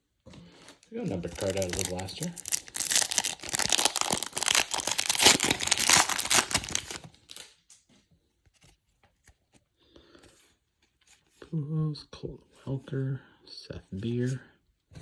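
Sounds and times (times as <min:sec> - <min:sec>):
cards being handled: 0:00.5 - 0:11.3
foil wrapper tearing and crinkling: 0:01.0 - 0:07.5.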